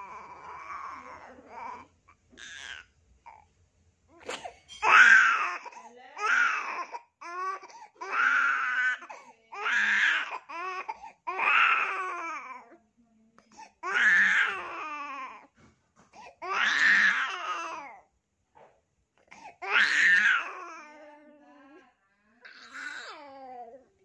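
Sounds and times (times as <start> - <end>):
baby crying: 0.0 - 3.4, 4.2 - 12.7, 13.8 - 15.5, 16.4 - 18.0, 19.6 - 21.0, 22.4 - 23.8.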